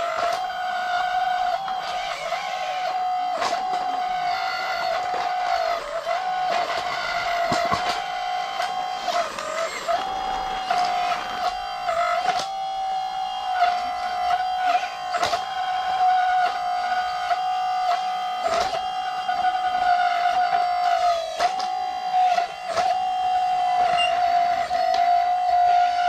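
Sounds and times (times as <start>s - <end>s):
small electric motor whining: 0.0s - 26.0s
clicks and knocks of moving parts: 0.2s - 12.6s.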